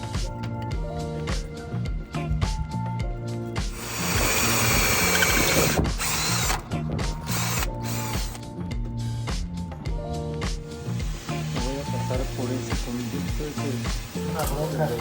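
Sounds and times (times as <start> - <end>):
background music with steady beat: 0.0 - 15.0
power drill running under load: 3.7 - 8.4, 10.8 - 15.0.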